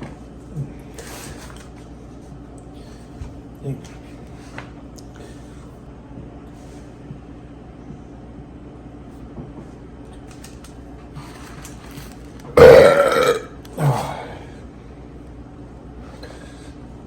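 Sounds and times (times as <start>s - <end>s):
man burping loudly: 12.6s - 14.3s.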